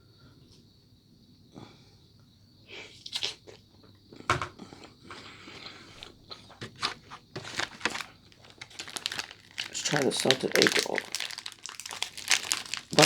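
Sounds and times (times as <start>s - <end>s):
person chewing a sausage: 3.0s - 6.6s, 10.8s - 13.0s.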